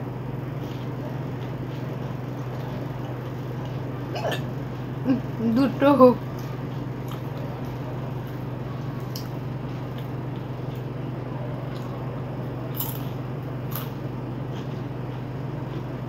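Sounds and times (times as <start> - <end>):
steady low hum: 0.0 - 16.0
crisp snack being chewed: 0.6 - 3.9, 6.3 - 11.0, 11.6 - 16.0.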